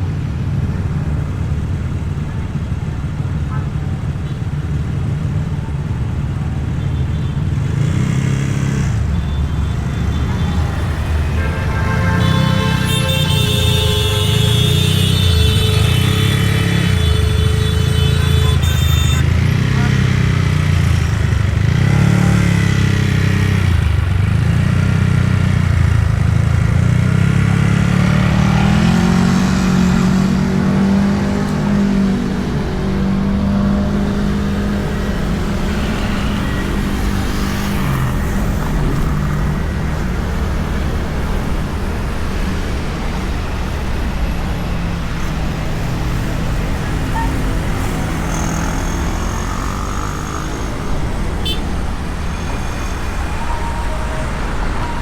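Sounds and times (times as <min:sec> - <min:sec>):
scooter engine running: 0:45.7 - 0:53.0.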